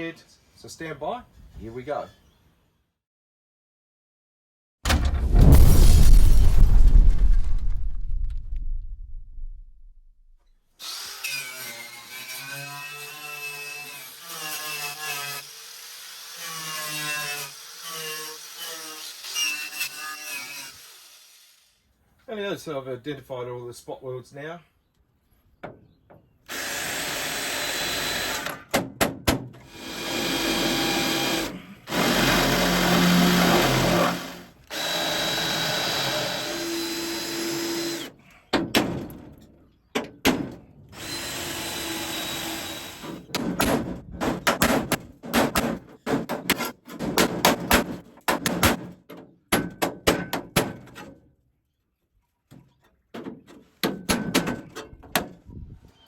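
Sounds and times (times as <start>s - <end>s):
electric drill cutting sheet steel: 10.8s - 21.7s, 26.5s - 28.6s, 29.7s - 38.1s, 41.0s - 43.3s
sharp knocks on metal: 28.7s - 29.5s, 40.0s - 40.6s, 43.3s - 51.1s, 53.2s - 55.3s.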